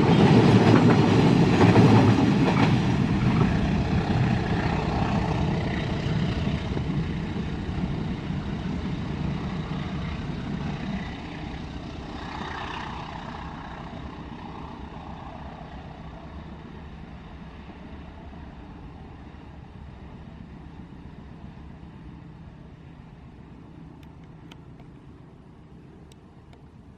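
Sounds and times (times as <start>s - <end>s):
train passing: 0.0s - 26.9s.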